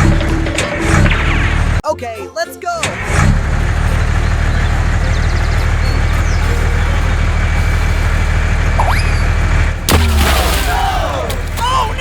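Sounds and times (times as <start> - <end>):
heavy vehicle engine rumbling: 2.8 - 12.0.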